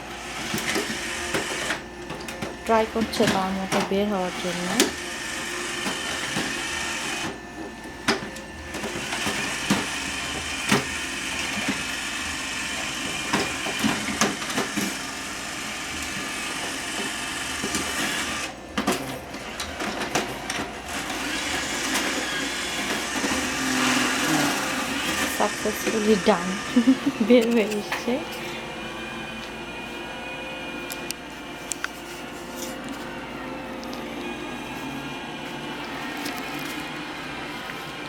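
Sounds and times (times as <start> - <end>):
robot vacuum running: 0.0 - 38.0.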